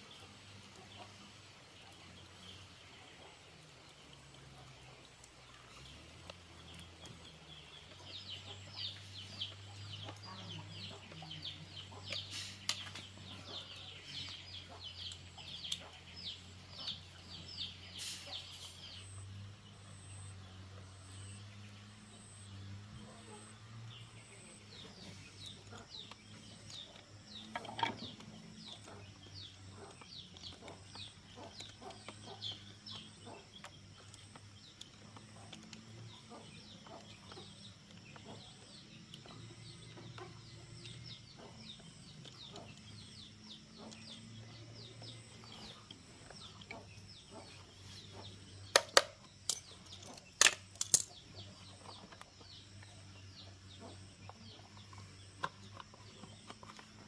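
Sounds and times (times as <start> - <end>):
chickens calling: 24.2 - 50.5
sharp clicks: 48.6 - 51.2.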